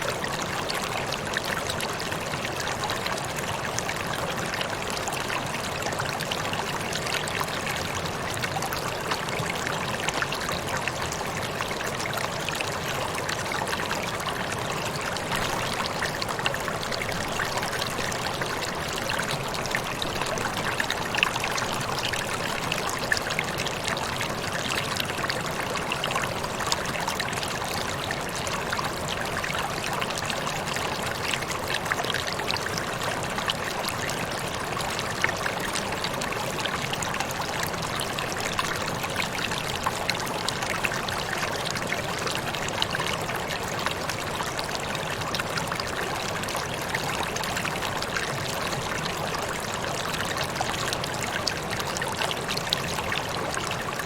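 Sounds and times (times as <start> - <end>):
waterfall rushing: 15.2 - 18.3.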